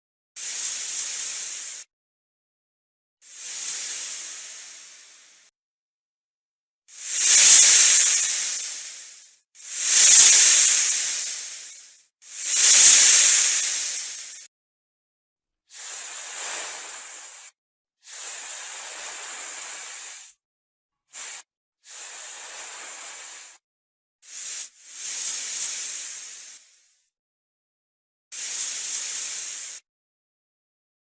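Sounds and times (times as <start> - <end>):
snake hissing: 0.4 - 1.9, 3.2 - 5.5, 6.9 - 14.5, 15.7 - 20.4, 21.1 - 23.6, 24.2 - 26.8, 28.3 - 29.8.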